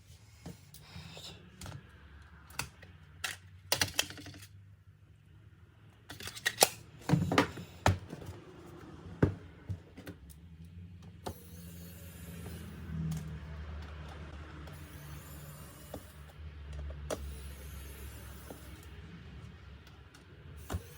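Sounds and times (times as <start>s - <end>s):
small tools and metal parts clicking: 2.4s - 4.7s, 6.0s - 6.8s.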